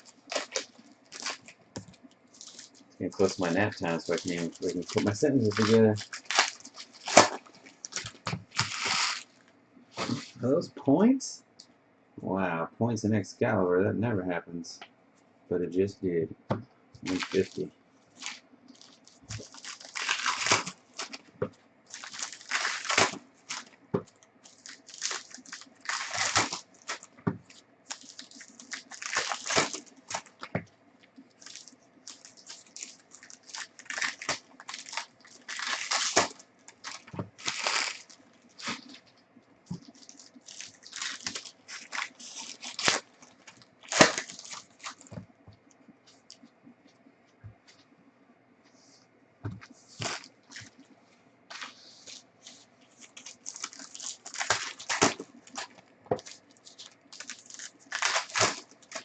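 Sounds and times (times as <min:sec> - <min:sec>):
wrappers tearing and crinkling: 0:00.0 - 0:10.4, 0:17.0 - 0:30.6, 0:31.2 - 0:45.2, 0:49.9 - 0:50.8, 0:51.5 - 0:59.0
cards rustling: 0:00.0 - 0:10.5, 0:17.0 - 0:30.6, 0:31.2 - 0:45.2, 0:49.6 - 0:50.8, 0:51.5 - 0:59.0.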